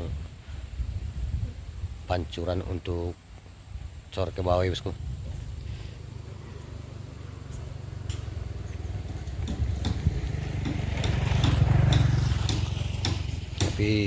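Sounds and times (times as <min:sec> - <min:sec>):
vehicle engine rumbling: 0:03.4 - 0:14.0.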